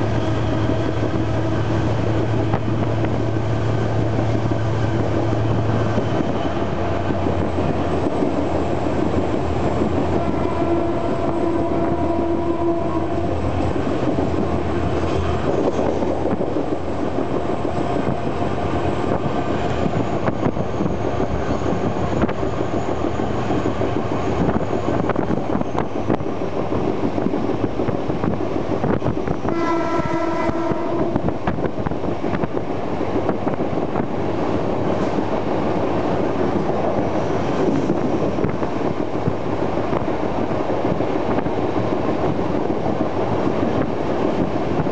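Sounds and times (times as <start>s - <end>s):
train horn: 10.0s - 13.6s, 29.5s - 31.4s.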